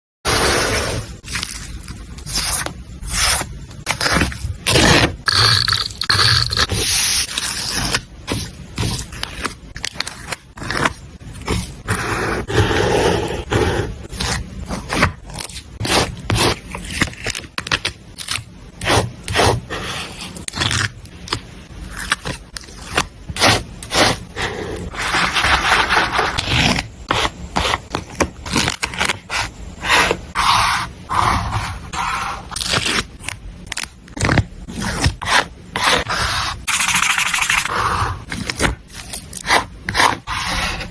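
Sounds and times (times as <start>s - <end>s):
paper scraping and rubbing: 0.3s - 5.2s, 21.9s - 33.4s, 34.2s - 40.9s.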